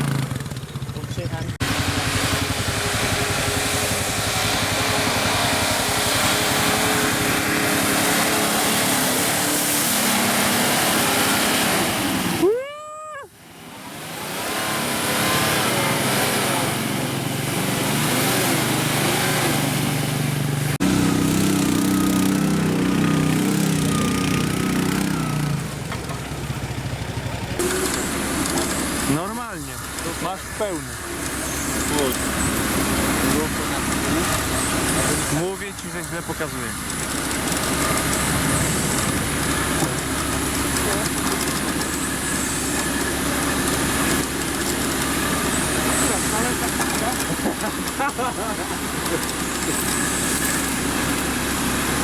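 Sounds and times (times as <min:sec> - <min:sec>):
off-road engine revving: 0:00.0 - 0:52.0
wheel and mud noise: 0:00.0 - 0:52.0
short rising and falling tone: 0:20.8 - 0:25.8.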